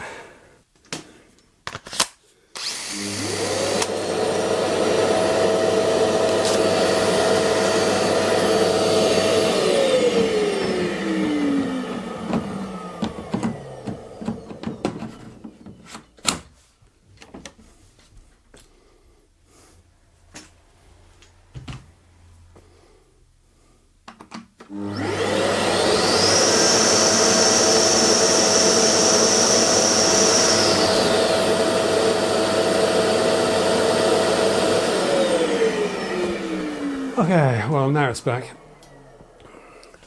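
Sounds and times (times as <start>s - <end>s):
dust extractor motor whine: 2.6s - 15.9s, 24.7s - 40.0s.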